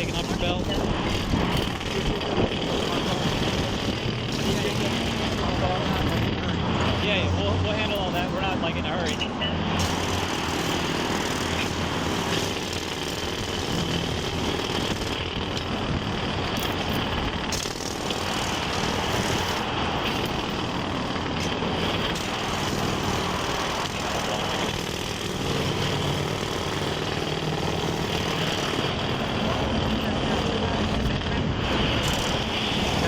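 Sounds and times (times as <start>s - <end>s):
heavy machinery engine running: 0.0s - 33.0s.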